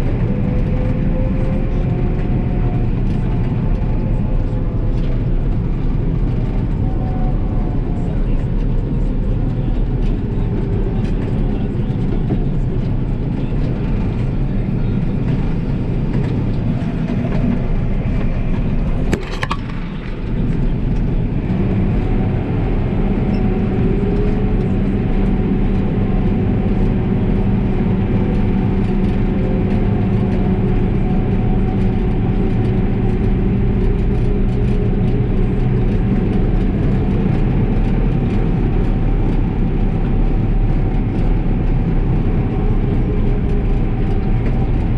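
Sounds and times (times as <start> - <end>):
diesel machinery drone: 0.0 - 44.9.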